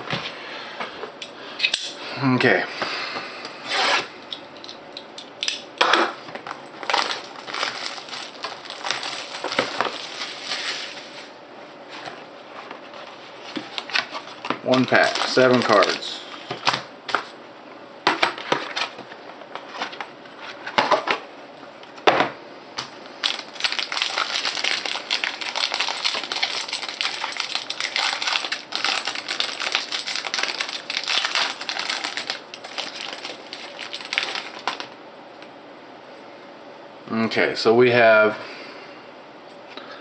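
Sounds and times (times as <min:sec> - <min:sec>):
foil wrapper crinkling: 0:06.8 - 0:11.2, 0:13.5 - 0:16.8, 0:23.2 - 0:35.0.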